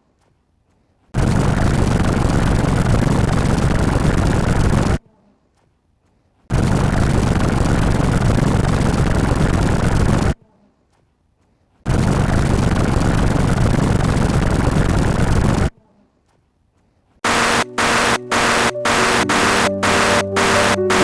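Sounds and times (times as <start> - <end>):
harsh static noise: 17.2 - 21.0
loud music: 17.2 - 21.0.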